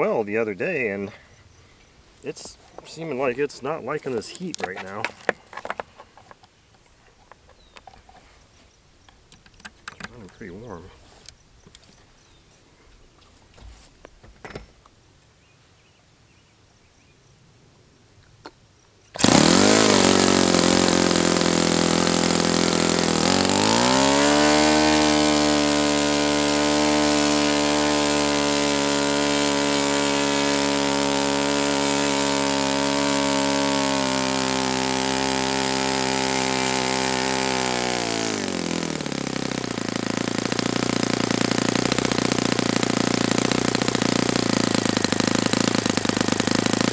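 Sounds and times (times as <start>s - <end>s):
model glow engine running: 19.2s - 46.9s.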